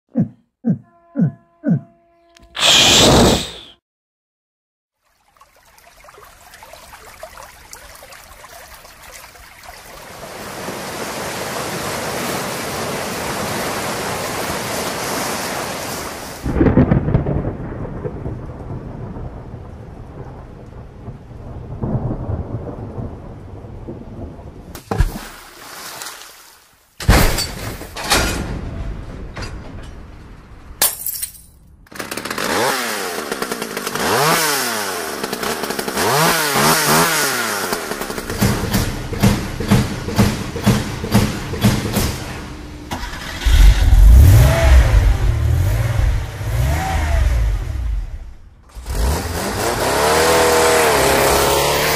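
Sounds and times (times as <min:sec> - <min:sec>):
deep rumbling: 0:42.5 - 0:49.2.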